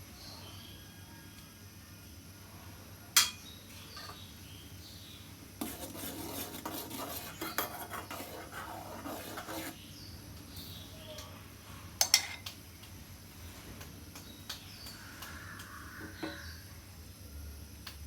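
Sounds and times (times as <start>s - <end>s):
metal utensils clinking on a pot: 3.2s - 4.2s, 12.0s - 12.5s.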